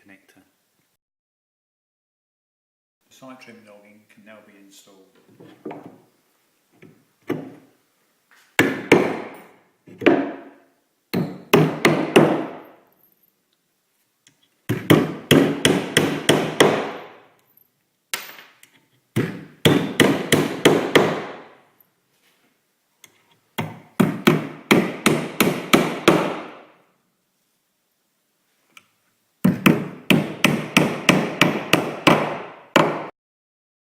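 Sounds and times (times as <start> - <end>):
hammer blows on timber: 14.7 - 17.2, 29.5 - 33.1.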